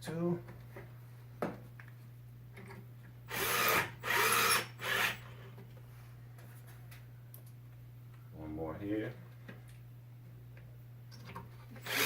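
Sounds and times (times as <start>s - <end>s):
power drill driving screw: 3.3s - 5.2s, 11.8s - 12.0s.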